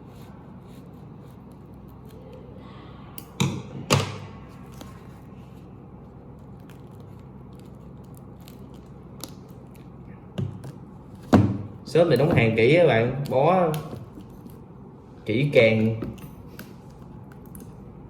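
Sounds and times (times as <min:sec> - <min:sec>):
packing wrapping crackling: 0:06.4 - 0:10.1.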